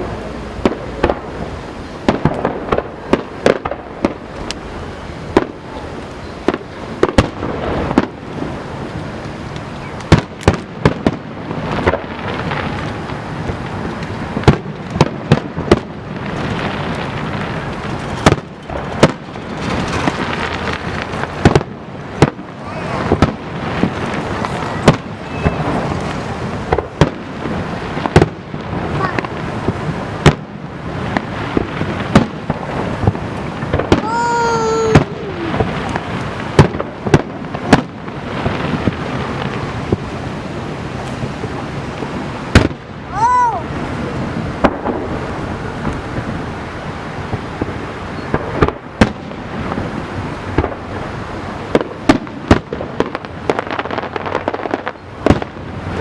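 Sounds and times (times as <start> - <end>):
crowd noise hum: 0.0 - 48.6
fireworks bangs: 0.0 - 56.0
person calling out: 34.0 - 35.6, 43.1 - 43.7.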